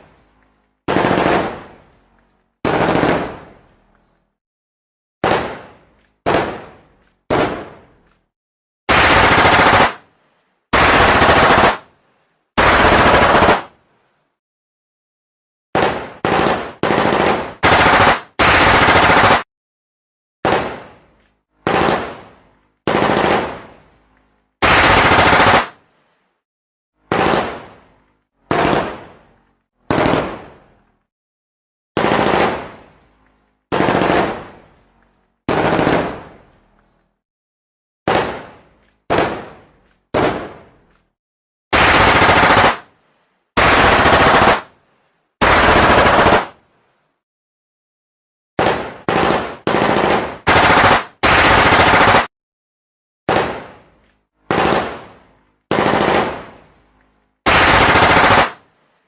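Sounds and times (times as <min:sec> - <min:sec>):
automatic gunfire bursts: 0:00.9 - 0:01.7, 0:02.6 - 0:03.4, 0:08.9 - 0:10.0, 0:10.7 - 0:11.8, 0:12.6 - 0:13.7, 0:15.8 - 0:19.4, 0:21.6 - 0:22.2, 0:22.9 - 0:23.6, 0:24.6 - 0:25.8, 0:27.1 - 0:27.6, 0:32.0 - 0:32.7, 0:33.7 - 0:34.4, 0:35.5 - 0:36.2, 0:41.8 - 0:42.9, 0:43.6 - 0:44.7, 0:45.4 - 0:46.6, 0:48.6 - 0:52.3, 0:54.5 - 0:55.0, 0:55.7 - 0:56.5, 0:57.5 - 0:58.6.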